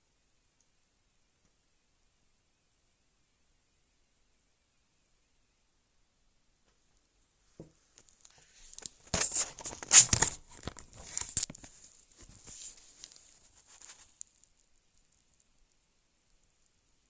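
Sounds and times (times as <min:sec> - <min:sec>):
rustling and crackling: 0:06.7 - 0:16.8.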